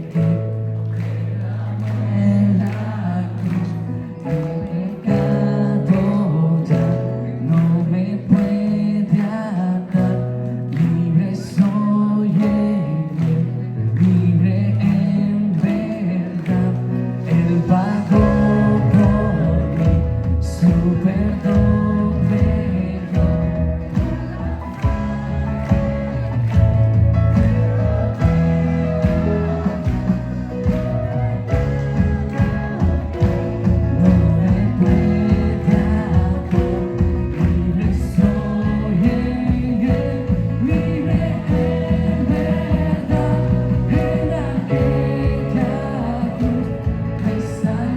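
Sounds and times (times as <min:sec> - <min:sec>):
people singing: 0:00.0 - 0:13.4, 0:14.0 - 0:47.9
bass guitar: 0:00.0 - 0:47.9
electric and acoustic guitars: 0:00.0 - 0:47.9
piano: 0:00.0 - 0:47.9
drum kit beat: 0:18.1 - 0:47.8.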